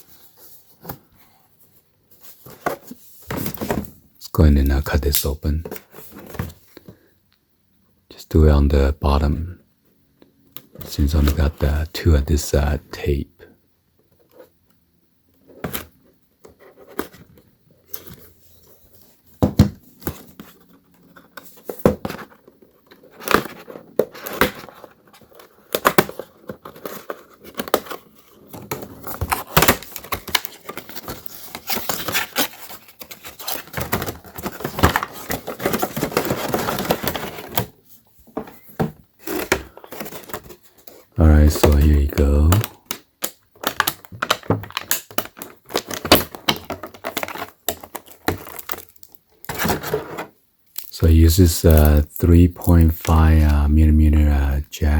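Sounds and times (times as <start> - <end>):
cardboard box handling clicks and knocks: 19.4 - 41.0
packaging crinkling and tearing: 28.8 - 37.7, 41.2 - 50.0, 50.7 - 53.1.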